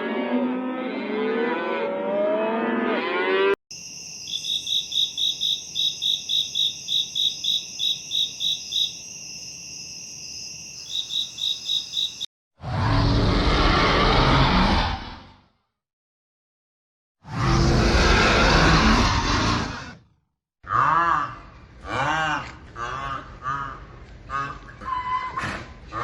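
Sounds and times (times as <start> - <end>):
insect chorus chirping: 3.7 - 12.3.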